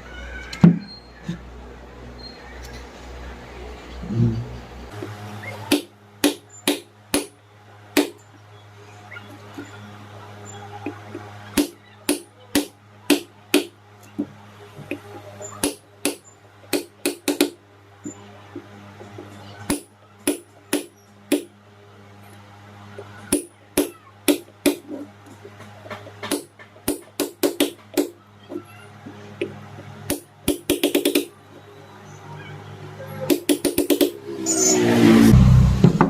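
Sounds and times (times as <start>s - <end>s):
hammer tapping steel punch: 5.7s - 7.3s, 8.0s - 8.2s, 11.6s - 13.7s, 15.6s - 17.6s, 19.7s - 21.5s, 23.3s - 24.9s, 26.2s - 28.2s, 29.4s - 31.3s, 33.3s - 34.2s.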